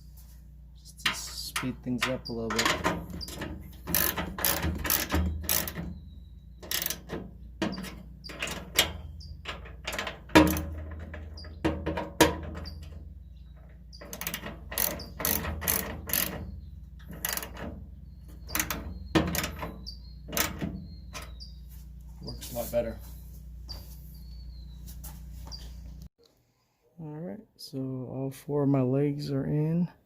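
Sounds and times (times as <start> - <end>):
hand ratchet clicking: 3.2 - 5.9, 6.6 - 7.1, 14.0 - 16.4, 17.1 - 17.6.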